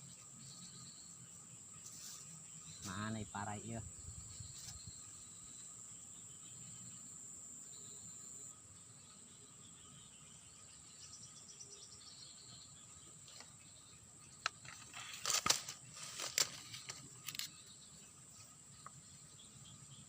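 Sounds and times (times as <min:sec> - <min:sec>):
insects droning: 0:00.0 - 0:20.0
sharp clicks and rustling: 0:14.4 - 0:17.6.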